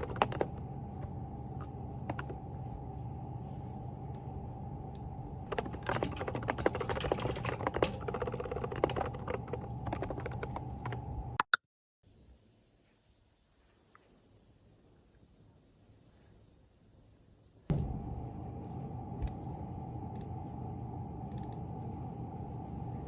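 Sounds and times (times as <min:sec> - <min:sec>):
keyboard typing: 0:00.0 - 0:00.7, 0:01.6 - 0:02.5, 0:05.4 - 0:11.6
background hum: 0:00.0 - 0:11.4, 0:12.1 - 0:23.0.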